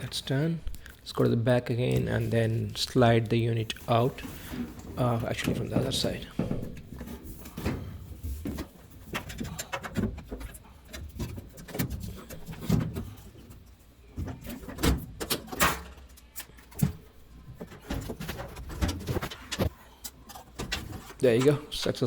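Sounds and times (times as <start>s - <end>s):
plastic and metal clicks and knocks: 5.3s - 7.8s, 8.4s - 13.1s.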